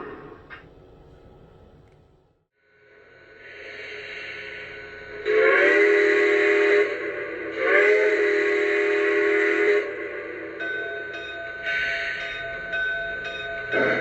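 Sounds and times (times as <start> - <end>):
steam whistle blasts: 3.7 - 10.6.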